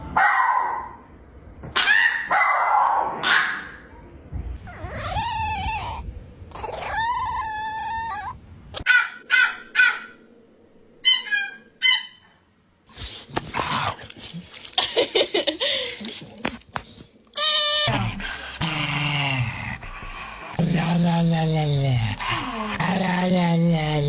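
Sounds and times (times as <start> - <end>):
dogs yipping: 1.6 - 3.6, 4.7 - 6.0, 11.0 - 12.3
dogs warbling howl-like whines: 4.7 - 8.4.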